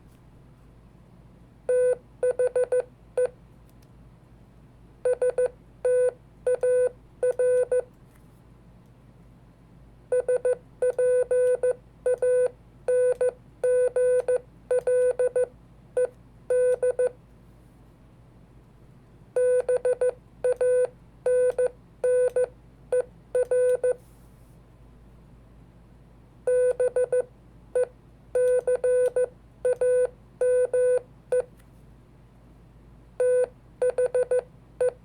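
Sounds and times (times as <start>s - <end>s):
morse code beeps: 10.1s - 15.5s, 19.4s - 24.0s, 26.5s - 27.3s, 33.2s - 35.0s.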